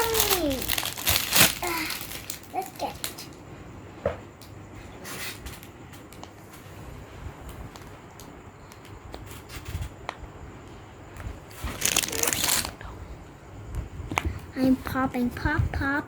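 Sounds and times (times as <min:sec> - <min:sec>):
plastic packaging rustling: 0:00.0 - 0:03.3, 0:11.5 - 0:12.8.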